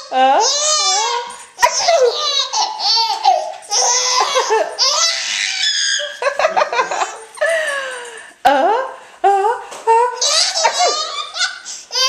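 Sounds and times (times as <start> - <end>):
baby laughing and squealing: 0.0 - 7.5, 10.2 - 12.0.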